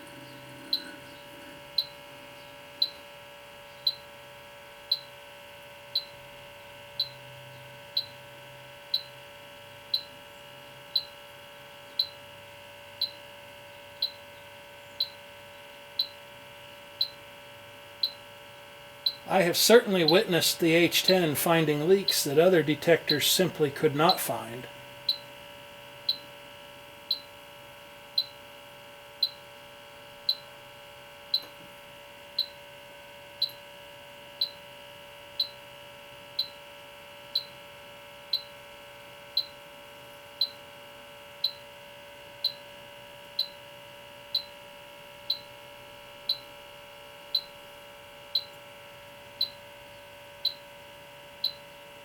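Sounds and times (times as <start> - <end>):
leak detector beeping: 0.0 - 3.2, 3.8 - 4.1, 4.9 - 5.2, 5.9 - 6.2, 6.9 - 8.2, 8.8 - 10.2, 10.8 - 11.2, 11.9 - 12.3, 13.0 - 13.3, 13.9 - 14.3, 15.0 - 15.3, 15.9 - 16.3, 16.9 - 17.3, 18.0 - 25.4, 26.0 - 26.3, 27.0 - 27.4, 28.1 - 28.5, 29.2 - 29.5, 30.2 - 30.6, 31.2 - 31.6, 32.3 - 32.7, 33.4 - 33.7, 34.3 - 34.7, 35.3 - 35.7, 36.3 - 36.7, 37.3 - 37.6, 38.3 - 38.6, 39.3 - 39.7, 40.3 - 40.7, 41.4 - 41.8, 42.4 - 47.6, 48.2 - 48.7, 49.3 - 51.8
faint steady hum: 0.0 - 52.0.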